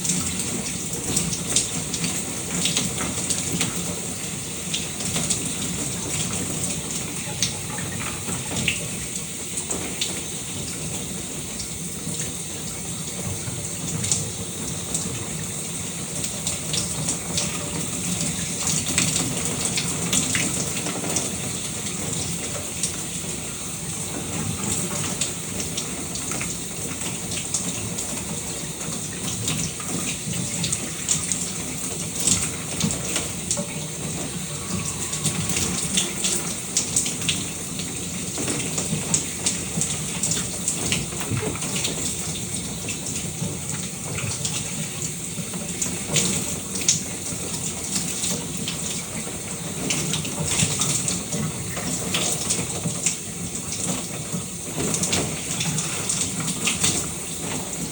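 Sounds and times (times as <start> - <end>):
water splashing: 0.0 - 44.8
shower running: 0.0 - 57.9.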